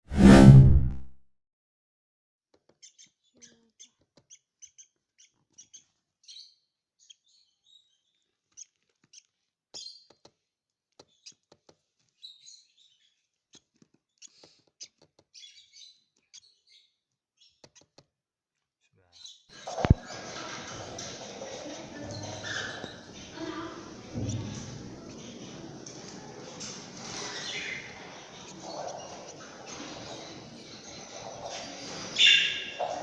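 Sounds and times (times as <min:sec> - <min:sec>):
bird chicks chirping: 0:19.6 - 0:33.0.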